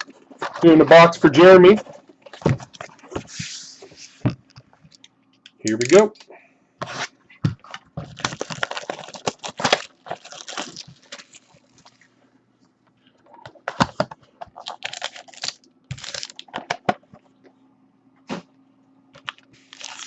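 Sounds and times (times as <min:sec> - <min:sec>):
wrapper and cardboard crinkling tearing: 0:05.7 - 0:06.1, 0:08.0 - 0:12.0, 0:14.6 - 0:16.8, 0:19.2 - 0:20.0.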